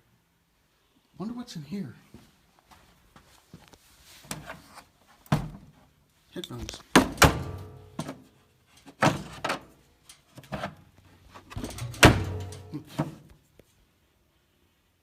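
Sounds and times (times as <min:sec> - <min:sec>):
knocks and bangs of objects: 0:06.9 - 0:08.3, 0:11.5 - 0:13.2.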